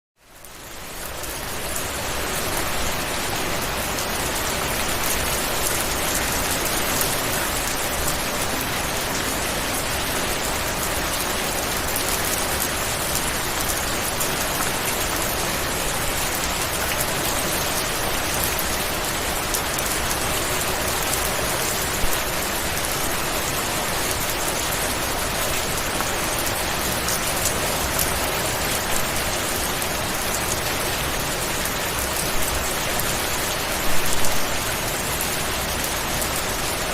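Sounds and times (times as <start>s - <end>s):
steady rain falling: 0.2s - 36.9s.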